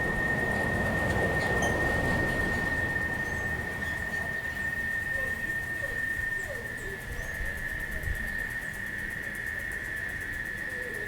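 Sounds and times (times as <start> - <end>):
distant traffic rumble: 0.0 - 7.1.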